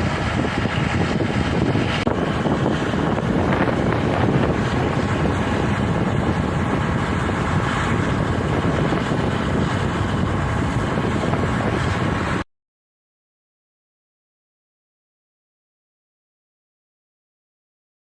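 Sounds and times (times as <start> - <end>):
wind buffeting microphone: 0.0 - 12.4.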